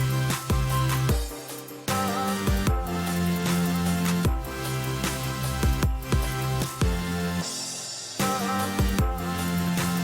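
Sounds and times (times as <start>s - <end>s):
music with beat and bass: 0.0s - 10.0s.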